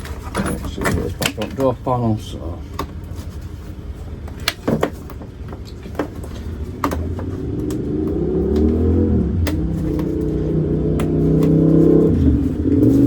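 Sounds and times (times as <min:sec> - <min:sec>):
steady low hum: 0:00.0 - 0:13.0
vehicle engine revving: 0:06.6 - 0:13.0.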